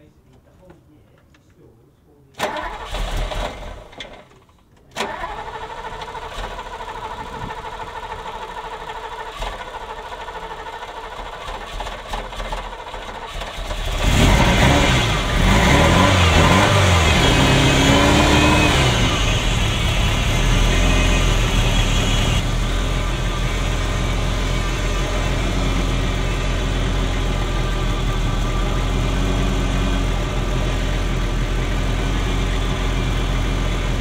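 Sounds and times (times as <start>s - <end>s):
car engine cranking and starting: 2.4s - 34.0s
rough running car engine revving: 13.3s - 34.0s.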